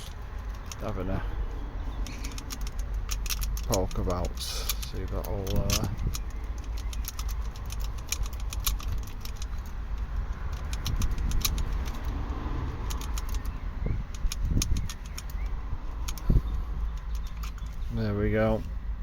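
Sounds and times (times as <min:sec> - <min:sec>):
lock pick clicking in lock: 0:02.1 - 0:09.7, 0:10.3 - 0:12.2.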